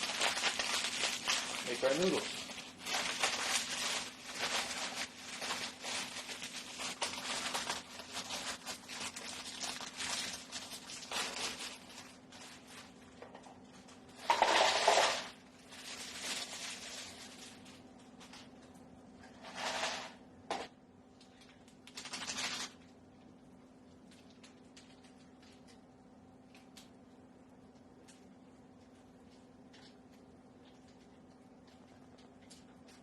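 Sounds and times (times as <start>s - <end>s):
plastic packaging rustling and crackling: 0.0s - 18.7s, 21.3s - 23.1s.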